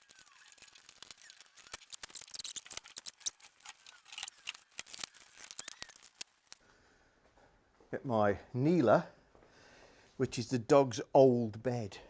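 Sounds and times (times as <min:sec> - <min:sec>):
faint chirping squeaks: 0:00.0 - 0:06.6.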